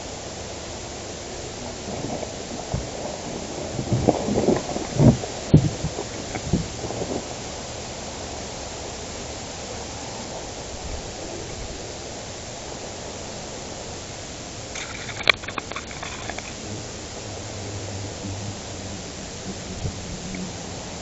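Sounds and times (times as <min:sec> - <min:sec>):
steady rushing noise: 0:00.0 - 0:21.0
sharp clicks and crack: 0:14.7 - 0:16.6.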